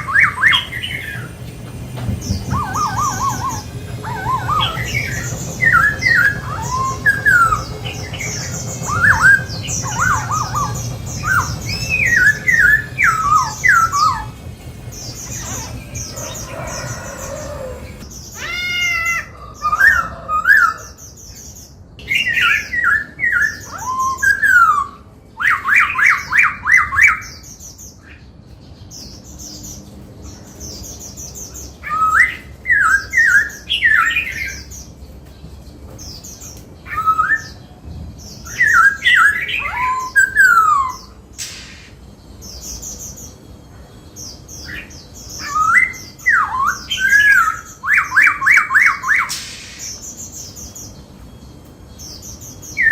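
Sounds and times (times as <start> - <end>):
bird singing whistled notes: 0.0 - 1.4, 2.2 - 14.4, 19.7 - 28.0, 36.8 - 43.5, 44.3 - 52.9.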